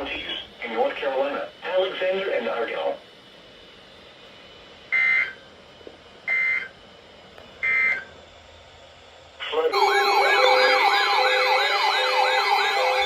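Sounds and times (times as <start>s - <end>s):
buzzing two-tone digital data: 9.7s - 13.0s.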